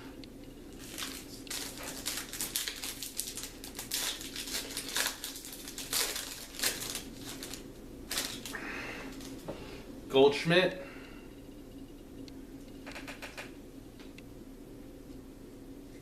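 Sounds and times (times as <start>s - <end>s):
wrapper crinkling: 0.7s - 9.4s
wrapper ripping: 0.8s - 9.4s.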